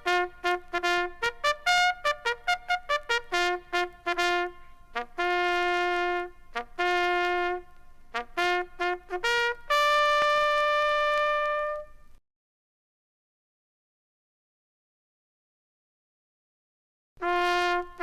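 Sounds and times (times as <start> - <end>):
bugle call on brass horn: 0.0 - 12.0, 17.2 - 18.0.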